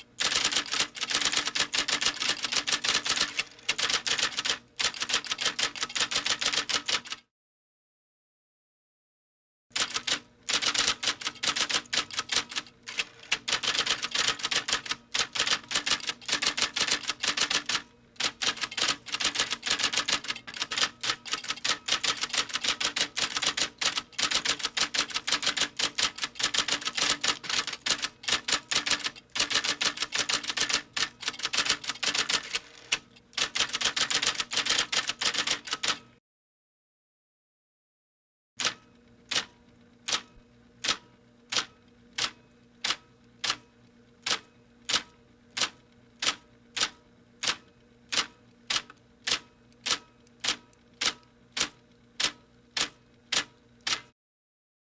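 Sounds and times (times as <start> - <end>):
rapid mechanical clicking: 0.2 - 7.2, 9.8 - 36.0, 44.2 - 54.1.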